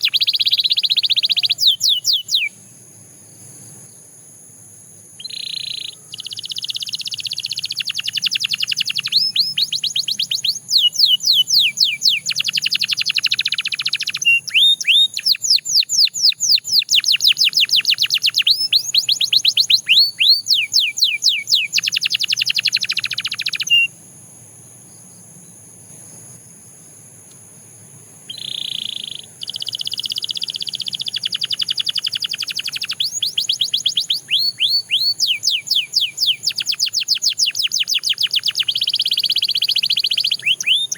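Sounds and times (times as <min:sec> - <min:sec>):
canary singing trills: 0:00.0 - 0:02.6, 0:05.2 - 0:23.9, 0:28.3 - 0:40.9.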